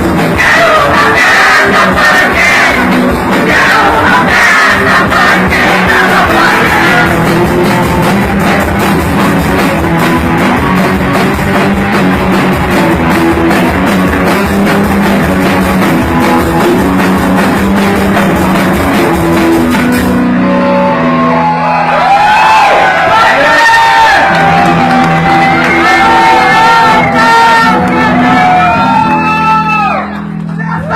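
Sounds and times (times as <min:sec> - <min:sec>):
bass guitar: 0:00.0 - 0:30.9
drum kit: 0:00.0 - 0:30.9
electric guitar: 0:00.0 - 0:30.9.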